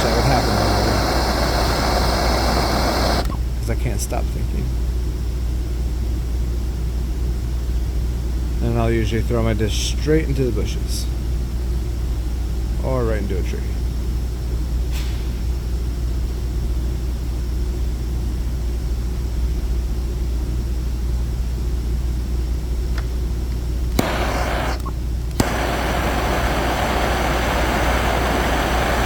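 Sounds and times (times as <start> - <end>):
torch flame hissing: 0.0 - 3.4, 23.9 - 29.0
torch igniter click: 0.0 - 3.4, 23.9 - 29.0
low steady hum: 0.0 - 29.0.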